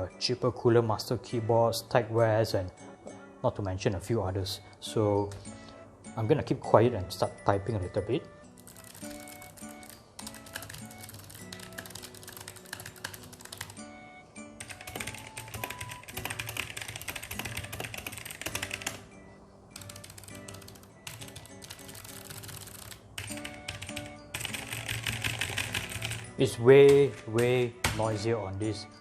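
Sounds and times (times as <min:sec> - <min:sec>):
background music: 0:00.0 - 0:29.0
mechanical keyboard typing: 0:08.6 - 0:13.8, 0:14.6 - 0:19.1, 0:19.8 - 0:26.3.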